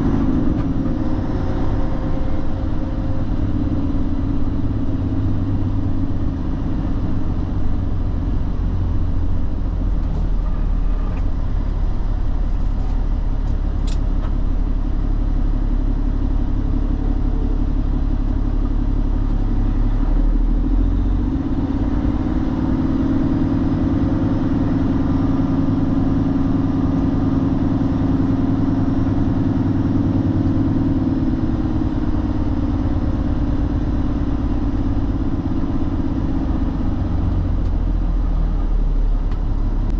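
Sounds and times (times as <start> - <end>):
diesel truck engine running: 0.0 - 39.9.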